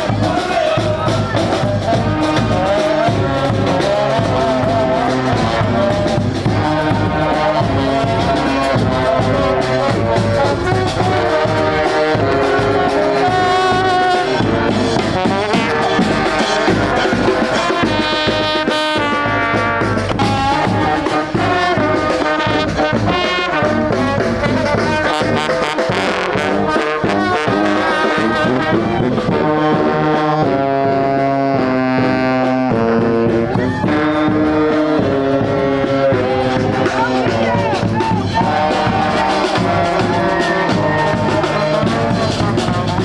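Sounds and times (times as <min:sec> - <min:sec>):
drums: 0:00.0 - 0:43.0
street brass band playing: 0:00.0 - 0:43.0.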